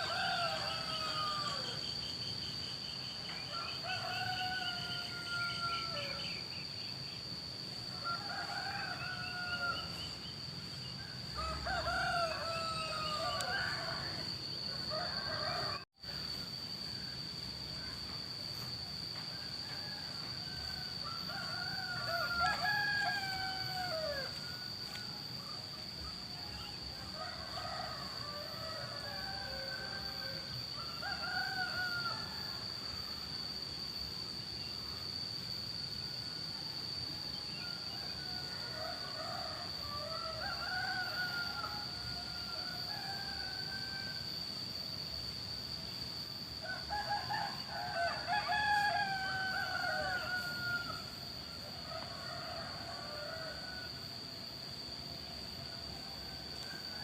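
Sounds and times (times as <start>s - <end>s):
roosters crowing: 0.0s - 2.1s, 3.1s - 6.6s, 7.8s - 16.4s, 19.0s - 25.6s, 26.3s - 33.5s, 36.7s - 45.0s, 46.5s - 54.6s.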